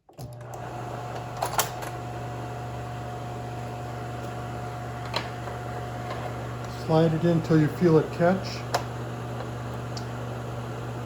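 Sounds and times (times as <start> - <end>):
projector blower humming: 0.2 - 11.0.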